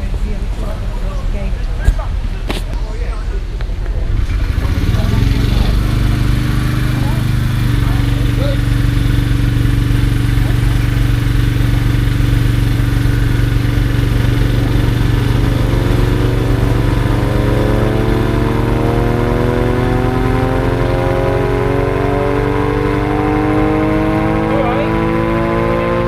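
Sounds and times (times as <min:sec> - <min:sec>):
low drone: 0:02.9 - 0:26.0
air-raid siren winding up: 0:13.8 - 0:25.9.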